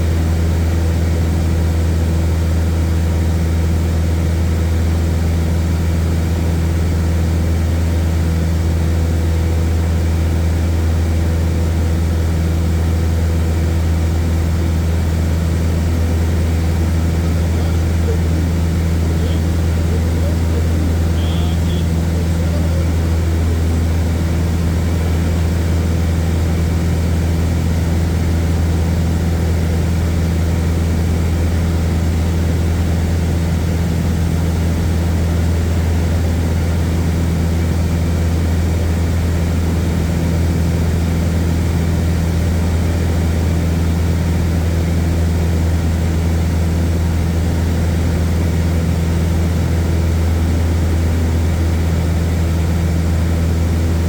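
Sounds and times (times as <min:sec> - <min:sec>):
propeller airplane engine drone: 0:00.0 - 0:54.0.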